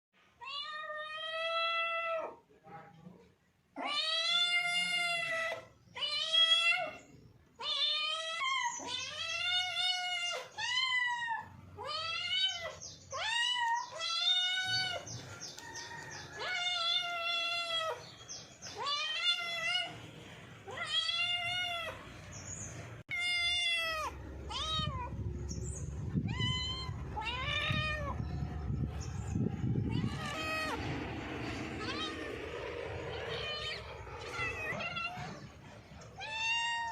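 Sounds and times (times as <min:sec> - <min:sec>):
cats meowing: 0:00.4 - 0:02.4, 0:03.8 - 0:36.9
low rumbling noise: 0:24.1 - 0:36.3.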